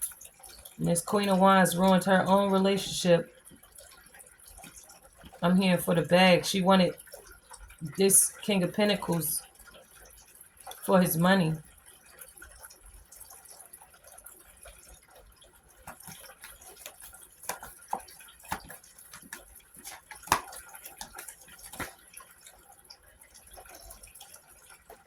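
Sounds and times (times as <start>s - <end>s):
cards clicking and tapping: 15.8s - 22.0s.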